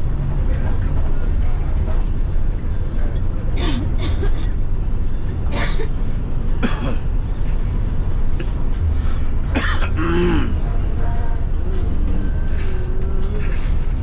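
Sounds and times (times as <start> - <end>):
bus engine rumbling: 0.0 - 14.0.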